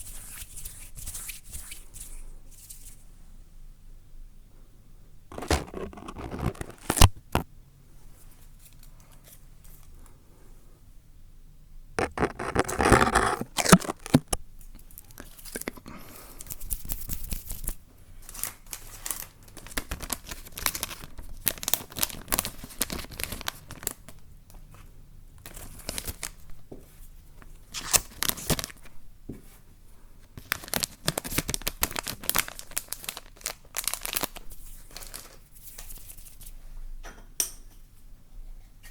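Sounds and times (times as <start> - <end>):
material rustling and crinkling: 5.3 - 7.4, 12.0 - 14.4.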